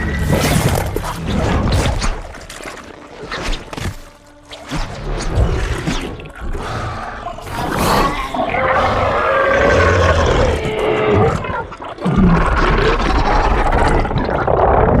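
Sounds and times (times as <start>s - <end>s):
monster roar: 6.6s - 15.0s.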